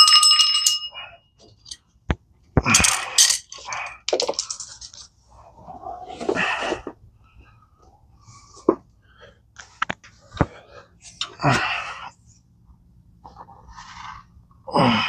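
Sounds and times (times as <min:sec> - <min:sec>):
small metal objects clinking: 0:02.7 - 0:05.1.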